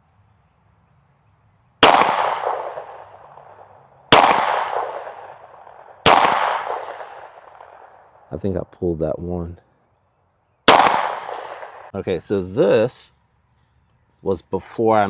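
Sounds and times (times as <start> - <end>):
pistol shots with echo: 1.8 - 7.9, 10.6 - 11.9.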